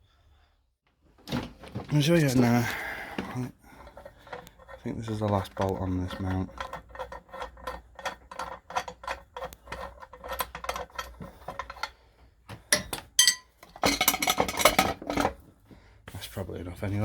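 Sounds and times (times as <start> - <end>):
metal parts clattering: 12.8 - 15.4
ringing metallic clinks: 13.2 - 13.5.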